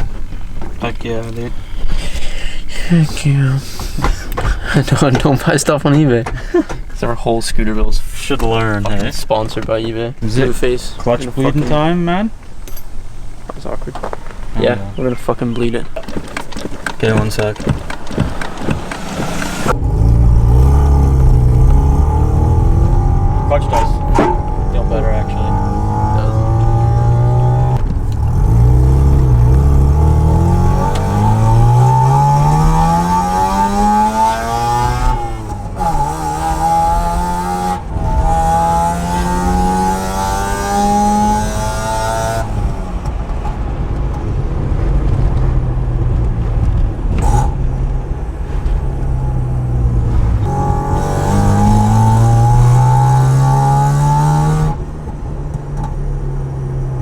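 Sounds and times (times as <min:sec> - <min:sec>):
rotary engine accelerating: 0:16.1 - 0:57.0.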